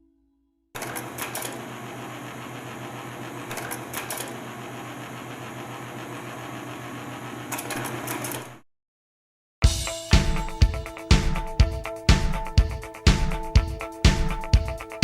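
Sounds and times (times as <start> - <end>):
small machine humming and rattling: 0.8 - 8.6.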